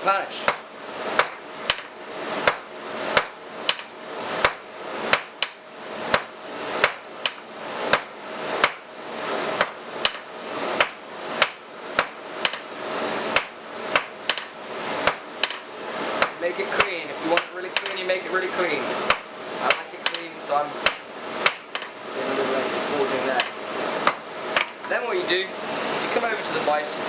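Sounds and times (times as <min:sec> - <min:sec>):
hammer striking metal on anvil: 0:01.2 - 0:02.6, 0:03.2 - 0:08.8, 0:09.6 - 0:12.7.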